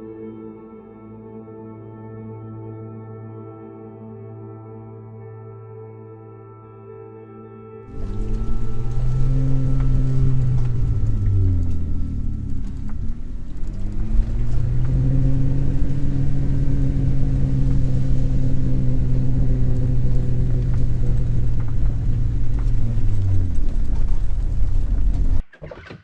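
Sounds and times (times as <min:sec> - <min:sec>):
vehicle engine running: 0:07.9 - 0:25.4.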